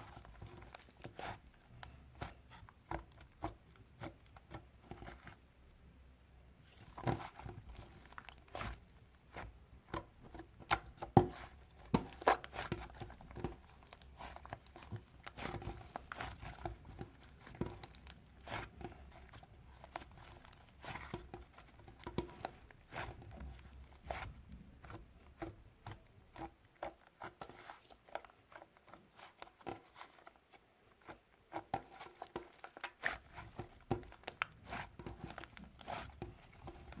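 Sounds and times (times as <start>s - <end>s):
slime crackling and popping: 10.7s - 26.0s.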